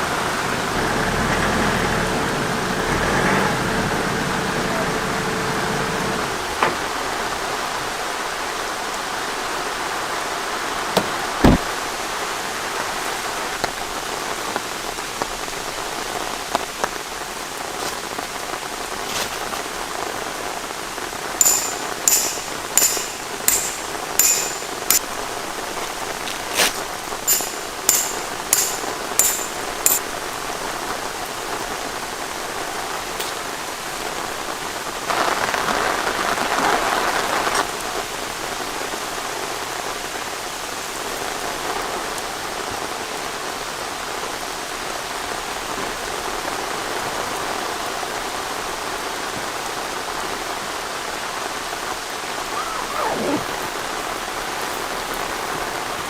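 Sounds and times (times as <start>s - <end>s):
steady rain falling: 0.0s - 56.0s
dull knock: 11.0s - 11.7s
sharp ticks: 27.3s - 30.0s.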